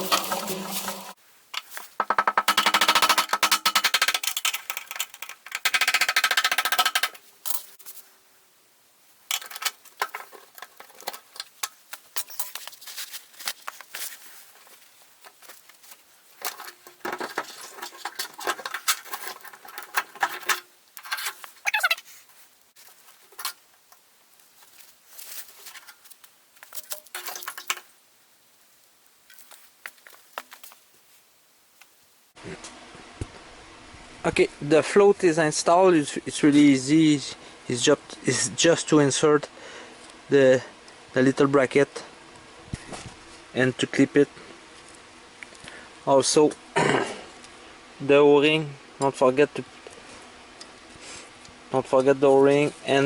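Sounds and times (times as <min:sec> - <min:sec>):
clicking and rattling of parts: 0:00.0 - 0:08.0, 0:09.3 - 0:22.0, 0:22.8 - 0:24.0, 0:25.5 - 0:27.9
handling noises and knocks: 0:00.0 - 0:08.0, 0:09.3 - 0:22.0, 0:22.8 - 0:28.0, 0:29.3 - 0:30.9.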